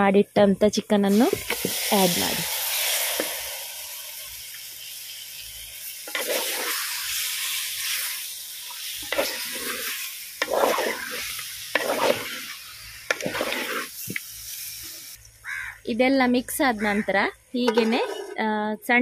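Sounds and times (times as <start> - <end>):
food sizzling in hot oil: 0.9 - 15.7
spoon scraping against pan: 9.0 - 14.1, 17.6 - 18.4.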